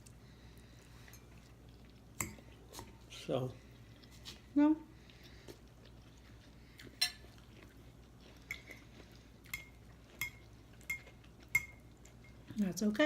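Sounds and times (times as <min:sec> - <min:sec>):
cutlery clinking against plates: 0:07.0 - 0:07.3, 0:09.5 - 0:12.4.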